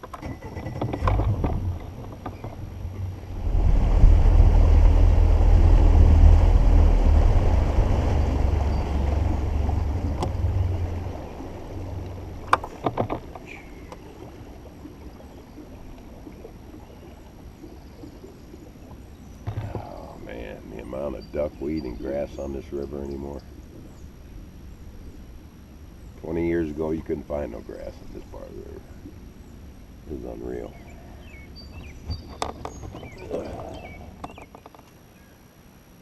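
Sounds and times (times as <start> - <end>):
boat engine low rumble: 0.0 - 36.0
wind buffeting microphone: 0.8 - 27.1.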